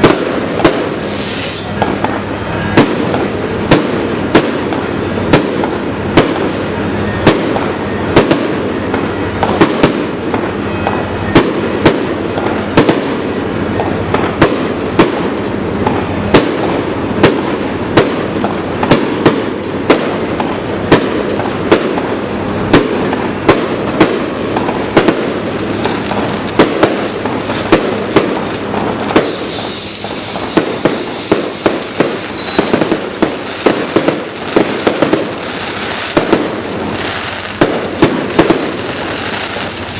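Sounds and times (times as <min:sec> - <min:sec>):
fireworks crackling: 0:00.0 - 0:39.9
high falling whistles: 0:29.1 - 0:34.7.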